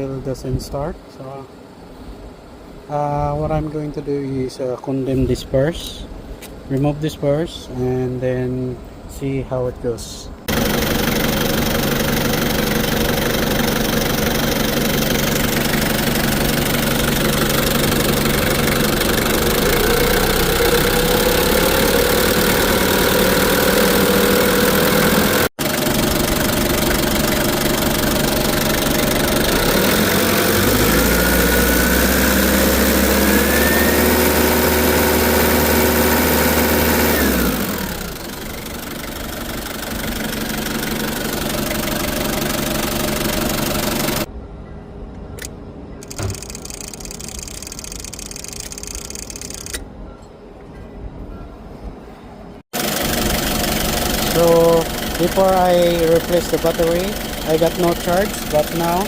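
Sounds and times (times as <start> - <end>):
diesel engine running: 10.4 - 44.3, 52.8 - 59.0
rising whine: 10.5 - 38.2.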